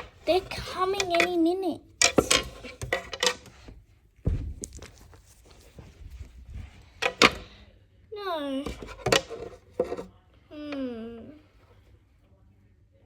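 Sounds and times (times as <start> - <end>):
dull thud: 4.2 - 4.9.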